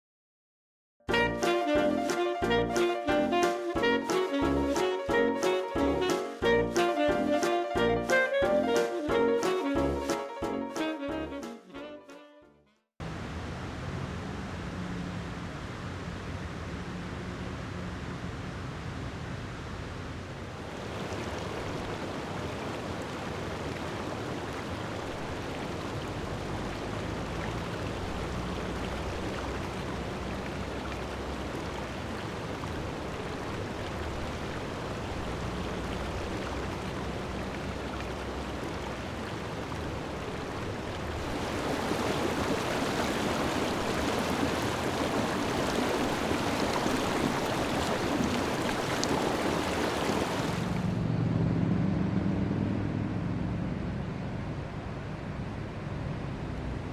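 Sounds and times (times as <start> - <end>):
flowing water rushing: 1.2 - 11.4, 20.2 - 51.1.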